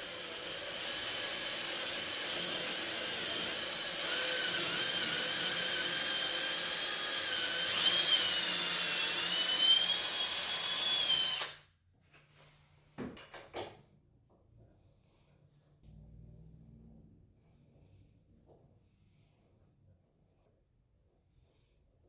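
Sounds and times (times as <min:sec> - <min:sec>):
power tool motor whining: 0:00.0 - 0:11.6.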